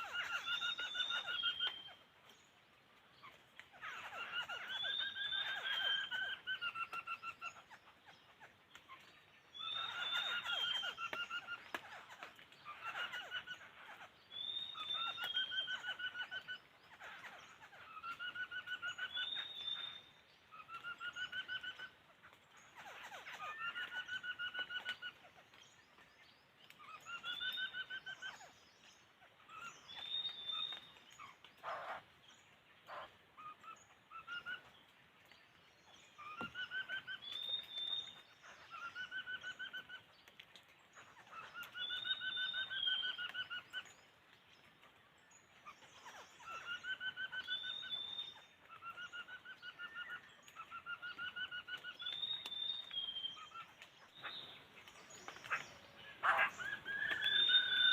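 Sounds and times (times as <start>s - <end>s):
bird calling in rattling phrases: 3.2s - 26.1s, 35.9s - 40.3s, 41.0s - 44.2s, 45.6s - 57.9s.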